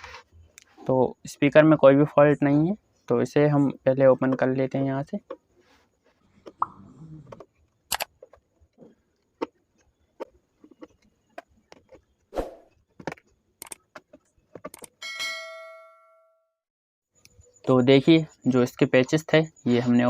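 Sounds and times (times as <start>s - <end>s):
metal piece ringing: 15.0s - 16.5s.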